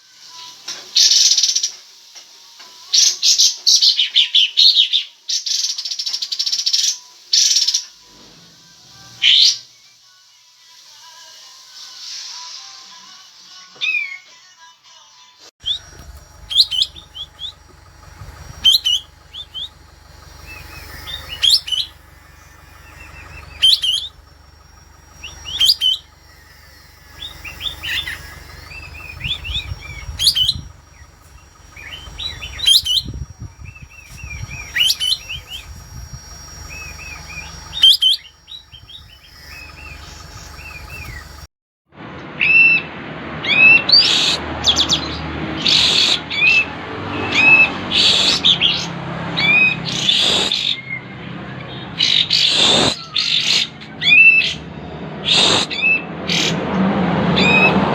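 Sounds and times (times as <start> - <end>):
bird singing sharp high notes: 15.6 - 41.5
low steady hum: 15.6 - 41.5
soft bird chattering: 15.7 - 41.4.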